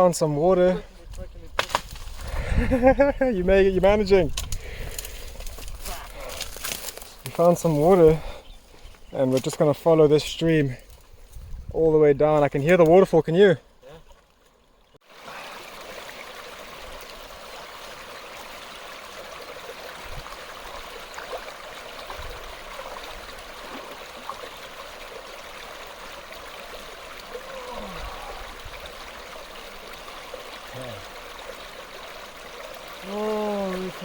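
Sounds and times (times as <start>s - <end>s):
stream flowing over rocks: 14.6s - 34.0s.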